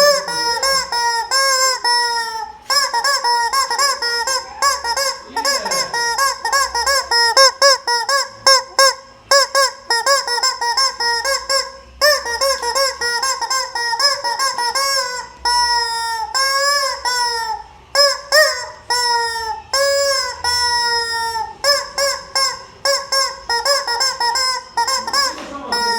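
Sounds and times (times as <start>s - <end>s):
hen calling loudly: 0.0s - 8.9s.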